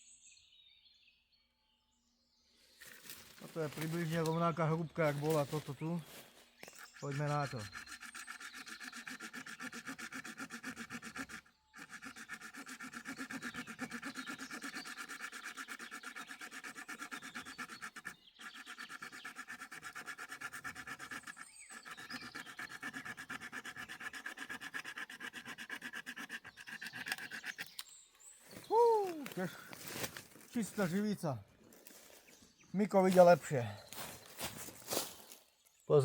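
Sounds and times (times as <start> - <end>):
saw blade cutting branch: 2.8 - 28.0.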